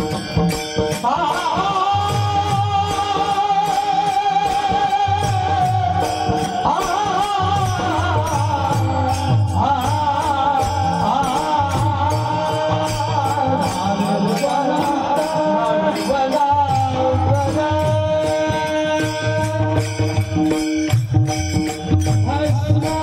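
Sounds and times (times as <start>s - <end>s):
hand cymbals: 0.0s - 23.0s
man singing: 0.8s - 23.0s.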